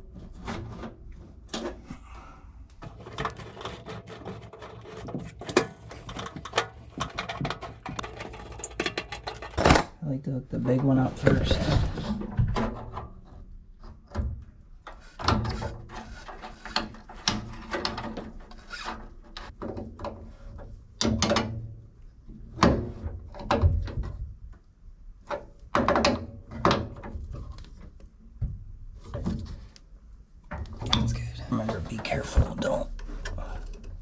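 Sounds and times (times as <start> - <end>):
hands clicking and knocking metal parts: 2.8 - 10.0.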